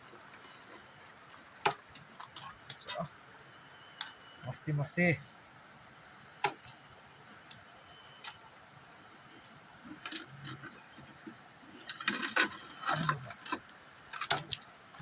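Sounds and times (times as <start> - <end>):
high-pitched insect chirring: 0.2 - 11.8.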